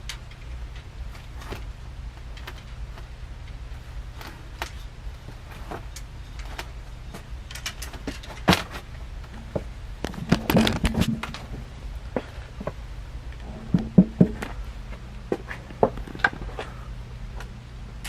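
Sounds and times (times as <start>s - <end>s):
steady low hum: 0.0s - 18.0s
metal parts clicking and knocking: 5.7s - 8.8s.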